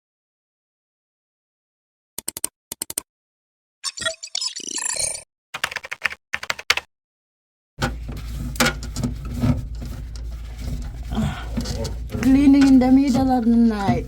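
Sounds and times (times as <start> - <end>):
rapid clicking like typing: 5.6 - 6.9
knocks: 7.8 - 14.0
steady low hum: 7.8 - 14.0.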